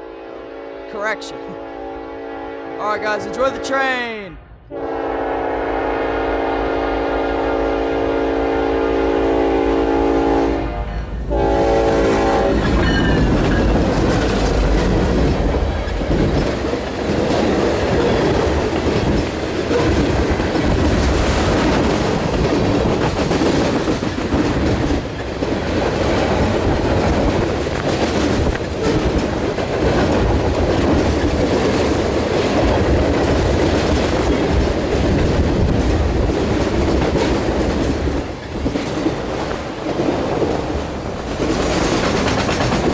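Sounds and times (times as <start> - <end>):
locomotive air horn: 0.0 - 3.0, 4.7 - 13.3
freight train rumbling past: 0.0 - 42.9.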